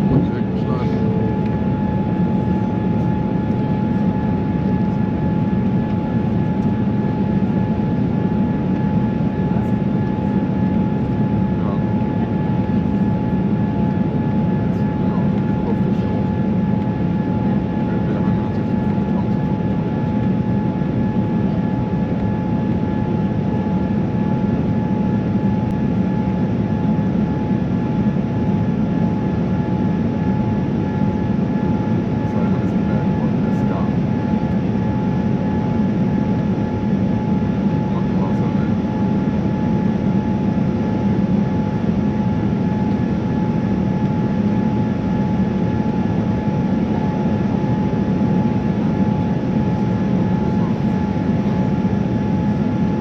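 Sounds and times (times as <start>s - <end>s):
airliner cabin engine noise: 0.0s - 53.0s
constant high whine: 0.0s - 53.0s.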